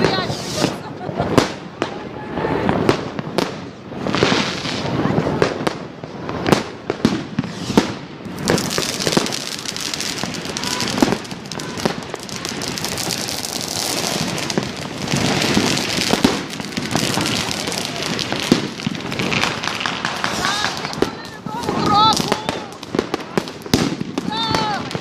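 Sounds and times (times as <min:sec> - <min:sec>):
faint firework whistles: 0:00.0 - 0:00.9, 0:06.5 - 0:14.3
firecrackers crackling: 0:00.0 - 0:25.0
firework bangs: 0:00.0 - 0:25.0.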